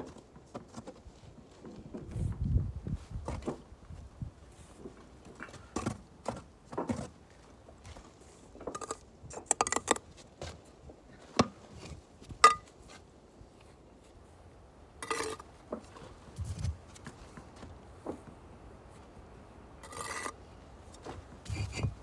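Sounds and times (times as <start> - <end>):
trowel knocking against bricks: 12.4 - 12.7
trowel scraping mortar: 15.0 - 15.5, 19.8 - 20.4, 21.5 - 22.0.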